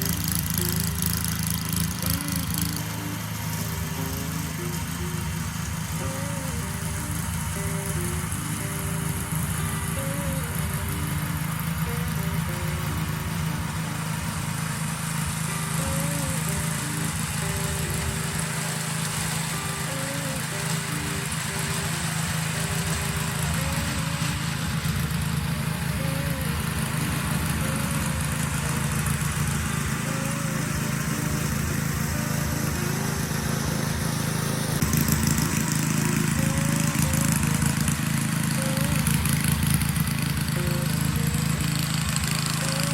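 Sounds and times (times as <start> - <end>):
small gasoline engine running: 0.0 - 42.9.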